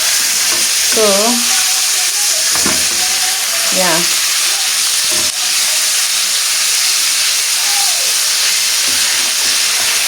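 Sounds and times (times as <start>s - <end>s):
food sizzling in a pan: 0.0s - 10.0s.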